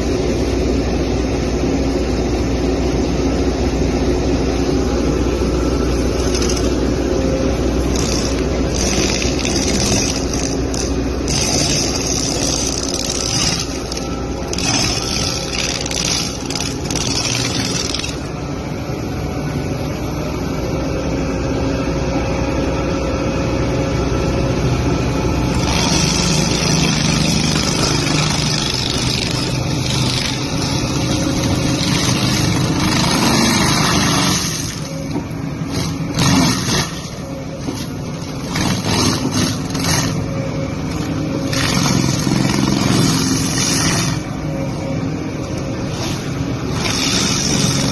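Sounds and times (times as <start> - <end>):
excavator diesel engine: 0.0 - 47.9
mulcher grinding: 4.7 - 19.1, 25.1 - 47.9.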